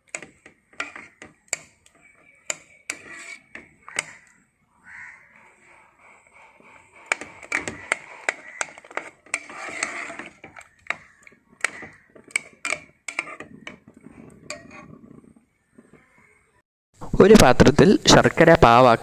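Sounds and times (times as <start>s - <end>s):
metal spoon knocking on pot: 0.0s - 4.4s, 7.0s - 16.0s.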